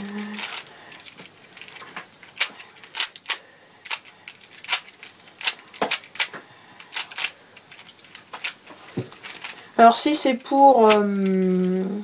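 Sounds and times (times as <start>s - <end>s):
plastic puzzle cube clacks: 0.0s - 11.9s.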